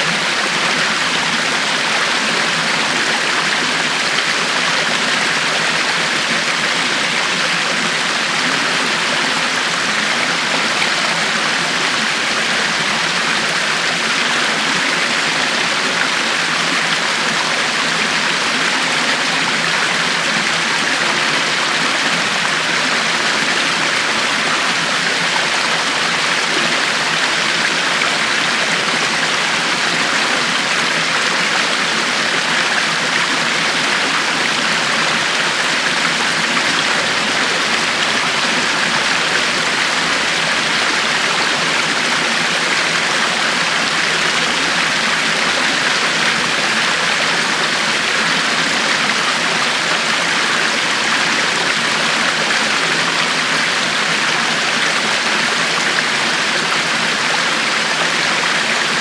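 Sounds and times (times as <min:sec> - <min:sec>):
river water flowing over rocks: 0:00.0 - 0:59.0.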